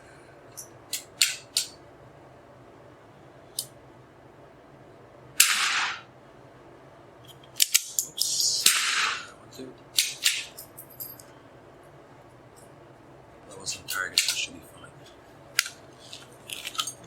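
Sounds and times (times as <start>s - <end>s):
rifle shot: 5.4s - 6.1s, 8.6s - 9.3s
metallic clicks of rifle handling: 7.3s - 9.3s, 15.6s - 17.0s.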